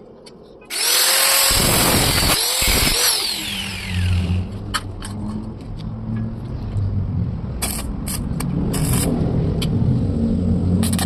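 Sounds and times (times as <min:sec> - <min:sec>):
low hum: 0:00.0 - 0:11.0
power tool whining: 0:00.7 - 0:04.5.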